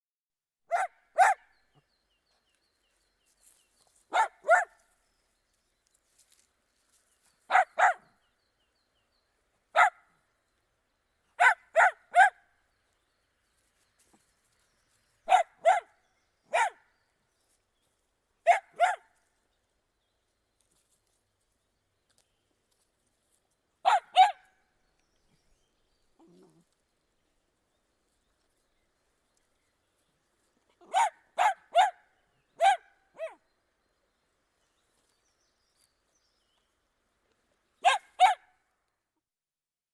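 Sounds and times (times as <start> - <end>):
dog barking: 0.7 - 1.5, 4.1 - 4.8, 7.5 - 8.1, 9.7 - 10.1, 11.4 - 12.4, 15.3 - 16.9, 18.4 - 19.1, 23.8 - 24.5, 30.8 - 33.4, 37.8 - 38.5.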